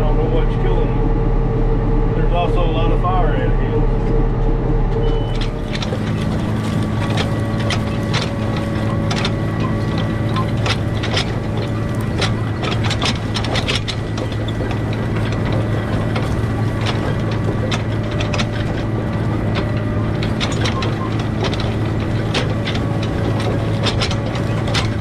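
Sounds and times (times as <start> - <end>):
tractor diesel engine under load: 0.0 - 25.0
machinery clicking and rattling: 5.0 - 25.0.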